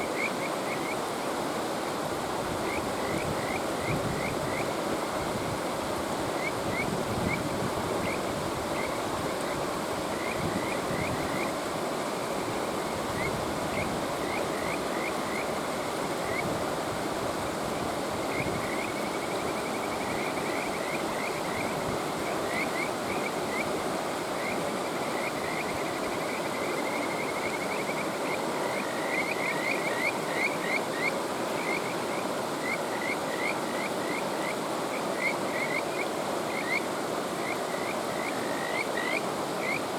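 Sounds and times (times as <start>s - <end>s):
mountain stream rushing: 0.0s - 39.9s
frogs calling high notes: 35.2s - 39.8s.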